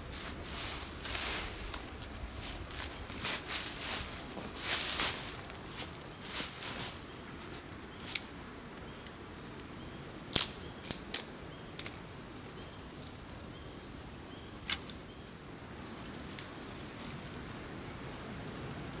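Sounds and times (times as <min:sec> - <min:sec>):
wind noise: 0:00.0 - 0:06.9.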